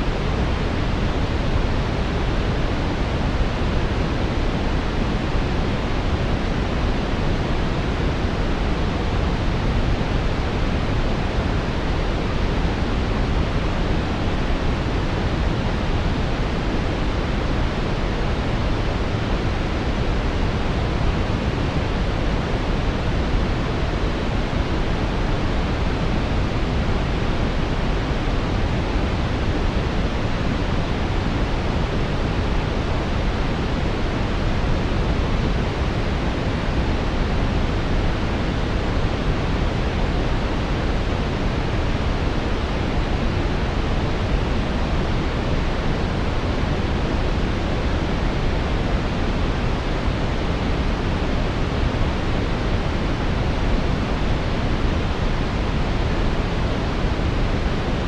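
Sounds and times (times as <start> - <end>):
brown noise hiss: 0.0 - 58.0.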